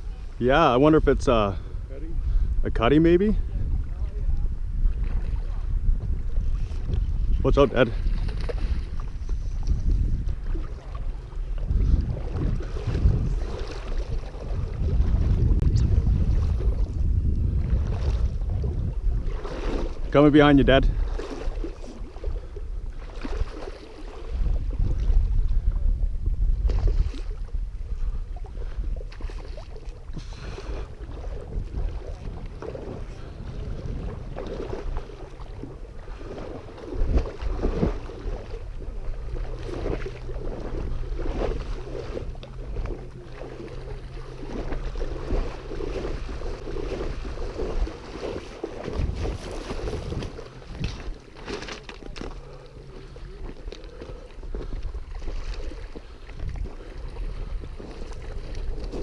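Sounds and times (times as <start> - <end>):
shoreline water: 0.0 - 59.0
wind buffeting microphone: 0.0 - 59.0
low motor hum: 3.4 - 20.2, 20.8 - 59.0.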